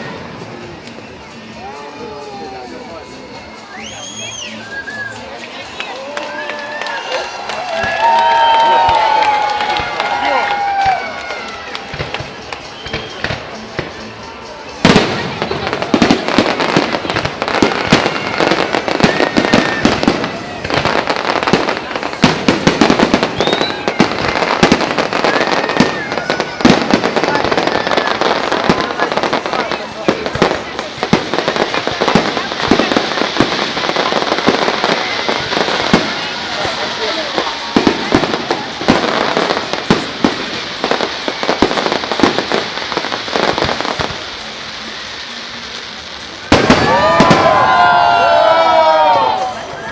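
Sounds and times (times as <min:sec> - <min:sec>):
fireworks bangs and crackling: 0:00.0 - 0:49.9
fireworks whistles: 0:00.1 - 0:49.9
steady hiss: 0:11.0 - 0:49.9.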